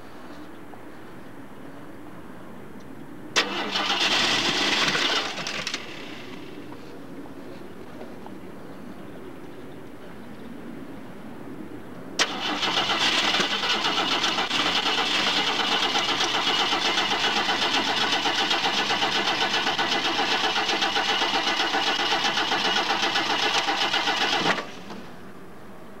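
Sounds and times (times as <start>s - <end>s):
starter cranking engine: 3.4s - 6.4s, 12.2s - 25.0s.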